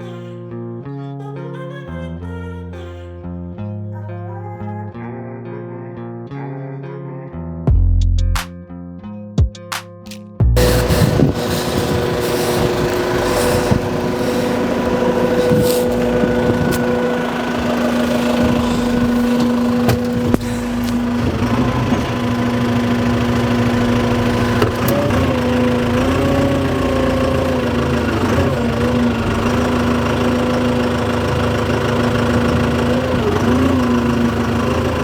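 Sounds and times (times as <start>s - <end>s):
engine running: 10.5s - 35.0s.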